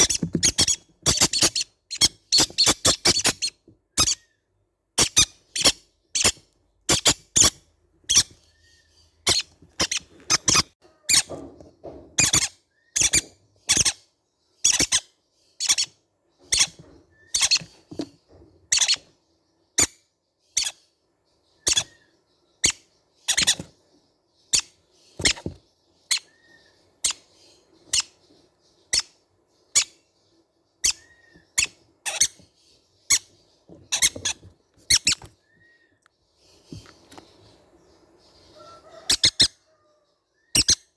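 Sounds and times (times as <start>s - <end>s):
parrots chirping shrilly: 0.0s - 4.3s, 5.0s - 8.4s, 9.2s - 11.3s, 12.2s - 14.0s, 14.6s - 17.7s, 18.7s - 19.1s, 20.6s - 20.8s, 21.6s - 22.0s, 22.6s - 23.7s, 24.5s - 27.2s, 29.7s - 30.0s, 30.8s - 32.4s, 33.9s - 35.8s, 38.6s - 40.9s.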